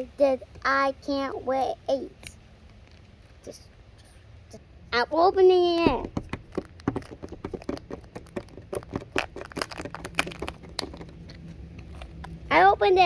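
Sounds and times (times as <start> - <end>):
wrapper crinkling and shell clicking: 5.8 - 12.4.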